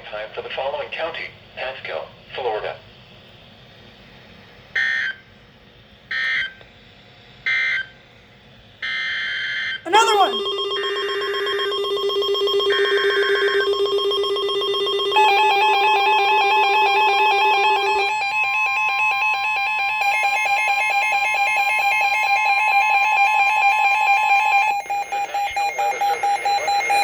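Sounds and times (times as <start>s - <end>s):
two-tone attention signal: 9.9s - 27.0s
rapidly pulsing low tone: 10.3s - 18.9s
screeching data burst: 24.5s - 27.0s.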